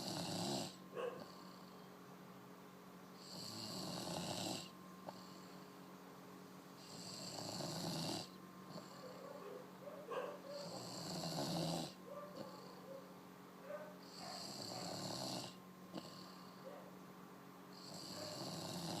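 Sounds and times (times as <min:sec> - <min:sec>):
person snoring: 0:00.0 - 0:01.7, 0:03.2 - 0:05.6, 0:06.8 - 0:09.2, 0:10.6 - 0:12.8, 0:14.0 - 0:16.6, 0:17.7 - 0:19.0.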